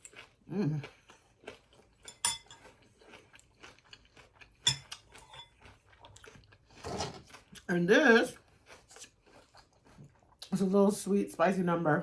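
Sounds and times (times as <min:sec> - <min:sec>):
faint chewing: 0:00.0 - 0:10.7
fork clinking against a plate: 0:02.1 - 0:02.7, 0:04.6 - 0:05.6.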